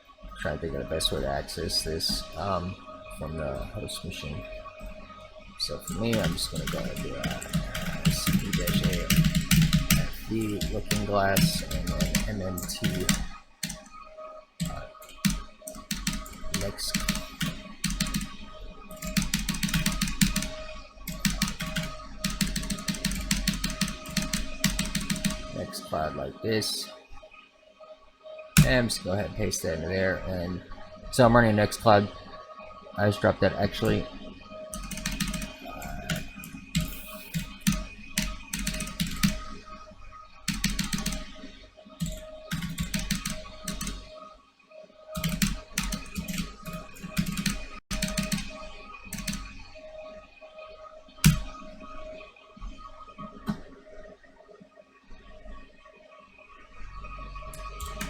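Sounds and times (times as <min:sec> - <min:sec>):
fast typing on keyboard: 0:05.6 - 0:13.9, 0:14.6 - 0:25.5, 0:28.6 - 0:28.9, 0:34.7 - 0:39.6, 0:40.5 - 0:41.4, 0:42.0 - 0:44.1, 0:45.2 - 0:49.5, 0:51.2 - 0:51.5, 0:57.6 - 0:58.0.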